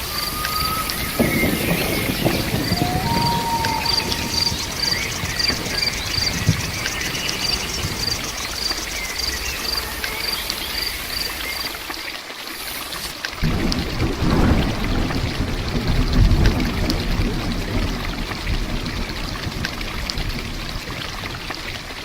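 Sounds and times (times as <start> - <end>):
insect chirping: 0.0 - 13.1
steady rain falling: 0.0 - 22.0.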